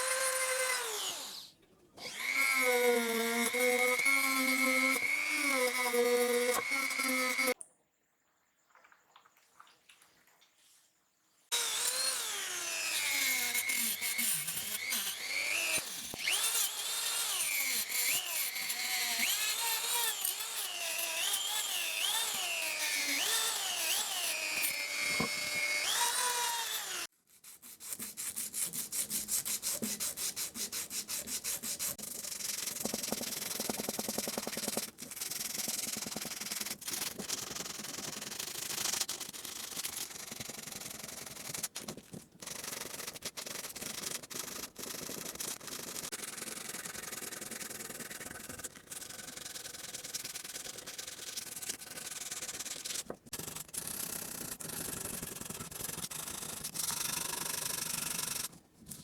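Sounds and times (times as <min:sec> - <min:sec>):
fast rubbing strokes: 0:25.8 - 0:58.5.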